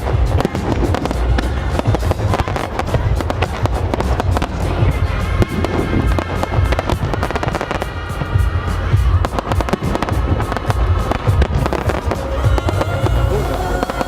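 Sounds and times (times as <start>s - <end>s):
fireworks bangs and crackles: 0.0s - 14.0s
low rumble: 0.0s - 14.0s
music playing: 0.0s - 14.0s.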